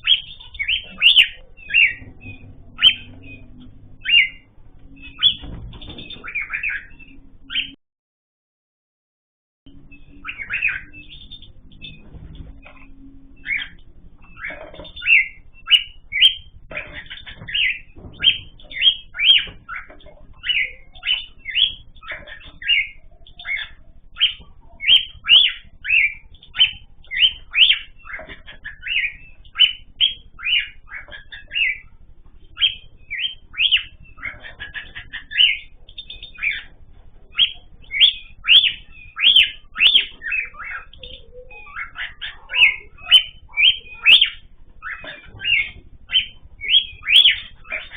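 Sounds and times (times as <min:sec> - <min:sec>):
cage birds chirping: 0:00.0 - 0:07.8, 0:09.7 - 0:47.9.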